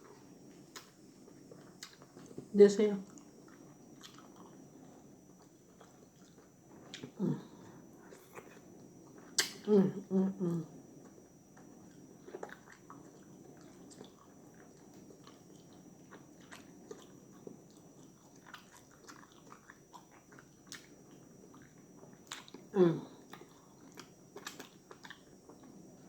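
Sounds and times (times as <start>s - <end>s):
wet chewing and lip smacking: 0.7s - 2.4s, 3.1s - 7.2s, 11.0s - 25.8s.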